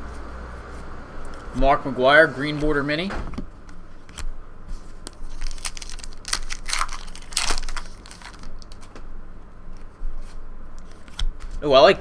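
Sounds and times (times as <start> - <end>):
card wrappers crinkling: 3.8 - 9.0, 9.7 - 11.6.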